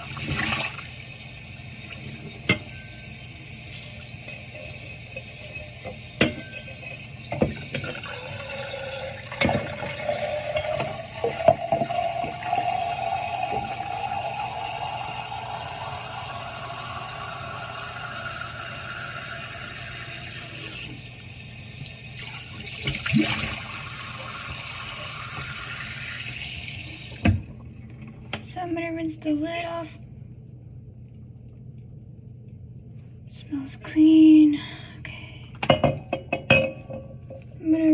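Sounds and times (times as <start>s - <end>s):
faucet water filling bottle: 0.0s - 27.4s.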